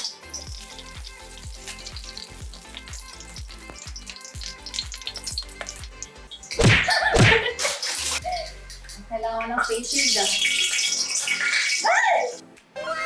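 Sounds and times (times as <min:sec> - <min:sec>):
chicken frying in hot oil: 0:00.0 - 0:06.6, 0:09.9 - 0:11.9
background music with beat: 0:00.0 - 0:11.6.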